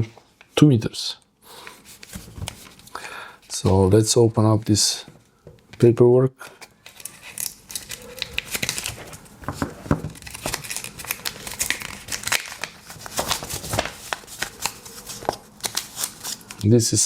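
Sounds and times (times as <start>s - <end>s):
paper rustling and crinkling: 1.7s - 2.9s, 6.7s - 16.8s.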